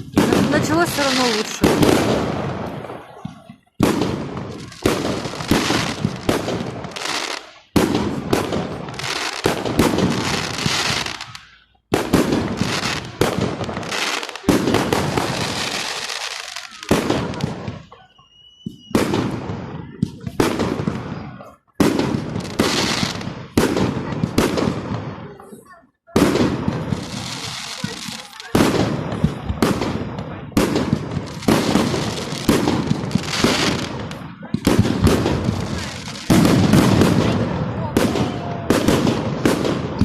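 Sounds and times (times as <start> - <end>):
fireworks bangs: 0.0 - 40.0
fireworks crackling: 0.0 - 40.0
fireworks whistle: 13.9 - 20.4.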